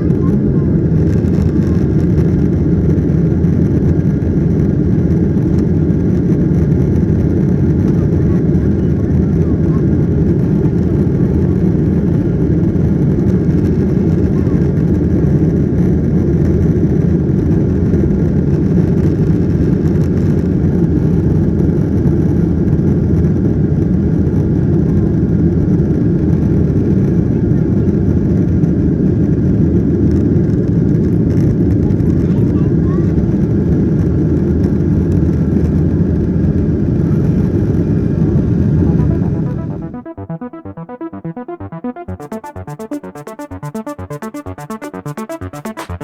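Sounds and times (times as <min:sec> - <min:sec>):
airplane cabin rumble: 0:00.0 - 0:16.5.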